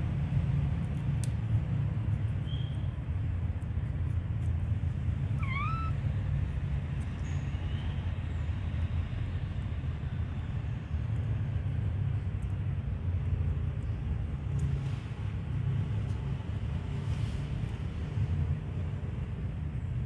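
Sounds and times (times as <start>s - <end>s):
faint chirp: 5.4s - 6.0s
young animal high-pitched call: 5.4s - 6.0s.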